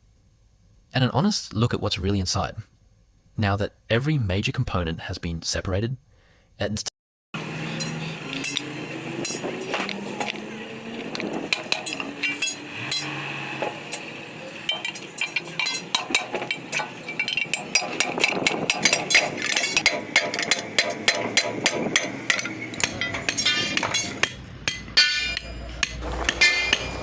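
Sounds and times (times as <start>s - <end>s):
metal knocks and clinks: 7.5s - 27.0s.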